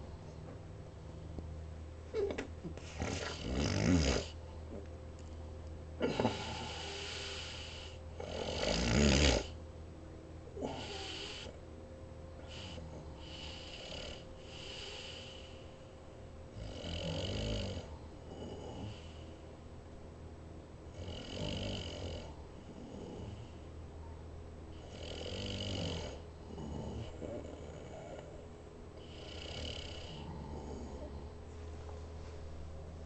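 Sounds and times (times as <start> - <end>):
person snoring: 2.8 - 4.4, 6.0 - 9.6, 10.6 - 11.6, 12.4 - 15.6, 16.6 - 19.3, 21.0 - 23.6, 24.8 - 28.4, 29.0 - 31.3.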